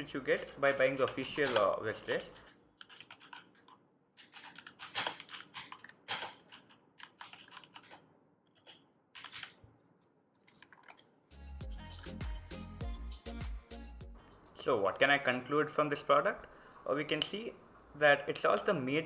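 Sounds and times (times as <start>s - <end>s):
mechanical keyboard key clicks: 2.8s - 8.0s, 8.6s - 9.6s
music: 11.3s - 14.6s.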